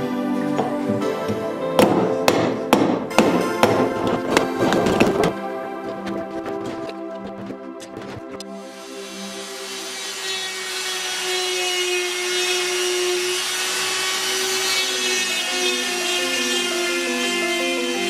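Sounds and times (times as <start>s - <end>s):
background music: 0.0s - 12.8s, 14.2s - 18.0s
power tool hissing: 8.5s - 18.0s.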